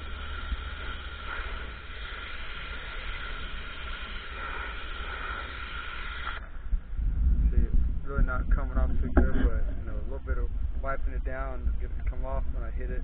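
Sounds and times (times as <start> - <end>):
pressure washer spraying: 0.0 - 6.4
low rumble: 0.0 - 13.0.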